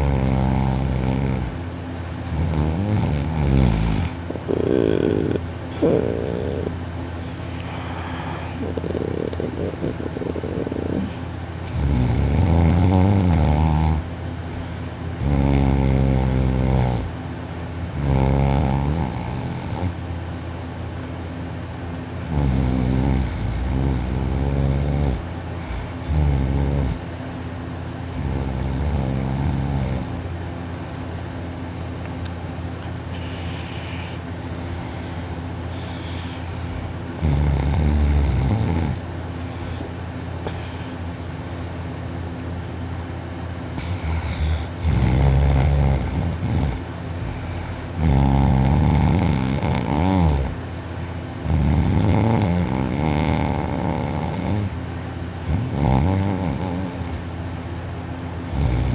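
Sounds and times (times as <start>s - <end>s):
man snoring loudly: 0.0s - 1.6s, 2.2s - 6.8s, 7.6s - 14.6s, 15.2s - 17.2s, 17.8s - 20.0s, 22.2s - 27.0s, 28.1s - 30.3s, 33.1s - 39.0s, 43.8s - 50.6s, 51.4s - 54.8s, 55.4s - 57.3s, 58.4s - 58.9s.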